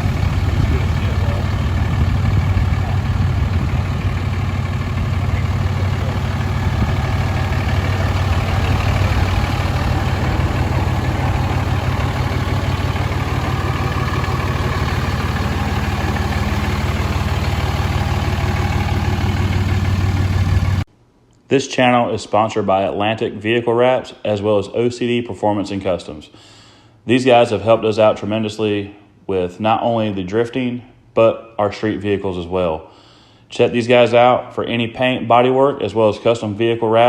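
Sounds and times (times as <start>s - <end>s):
diesel engine idling: 0.0s - 20.9s.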